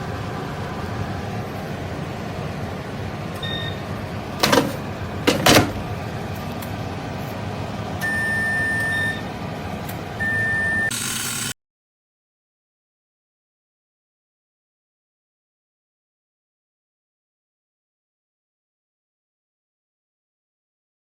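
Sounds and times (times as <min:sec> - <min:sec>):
air fryer fan whirring: 0:00.2 - 0:11.5
control panel beeps: 0:10.2 - 0:10.9.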